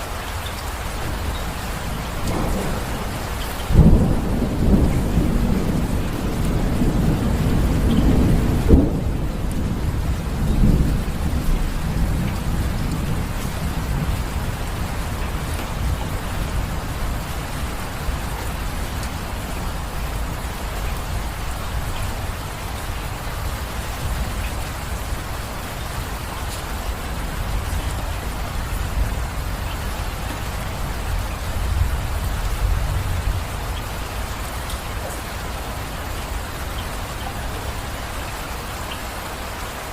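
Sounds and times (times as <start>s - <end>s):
steady rain: 0.0s - 39.9s
thunder rumbling: 0.7s - 38.2s.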